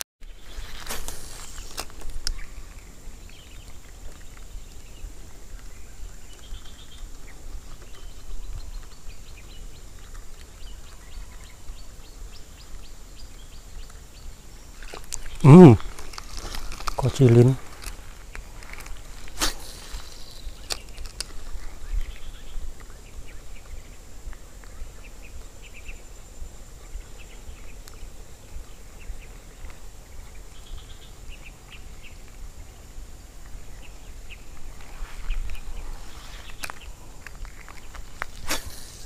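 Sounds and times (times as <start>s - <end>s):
high insect drone: 0.3s - 39.0s.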